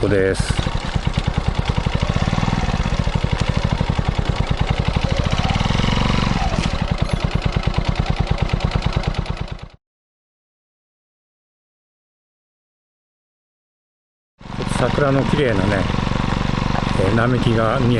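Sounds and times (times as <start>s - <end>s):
motorcycle engine exhaust pulses: 0.0s - 9.8s, 14.4s - 17.9s.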